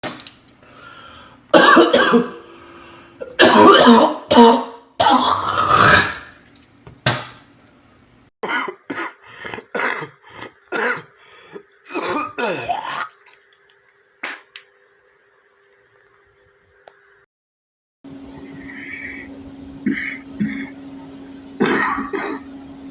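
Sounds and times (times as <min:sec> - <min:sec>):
faint steady hum: 0:00.5 - 0:05.4, 0:18.1 - 0:22.9
person coughing wetly: 0:01.5 - 0:02.4, 0:03.2 - 0:05.6, 0:08.4 - 0:11.2, 0:11.9 - 0:13.2, 0:19.8 - 0:20.8, 0:21.6 - 0:22.5.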